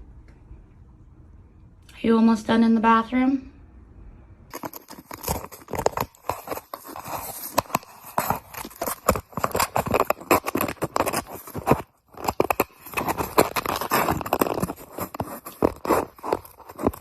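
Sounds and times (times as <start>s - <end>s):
cat chewing cardboard: 4.5s - 17.0s.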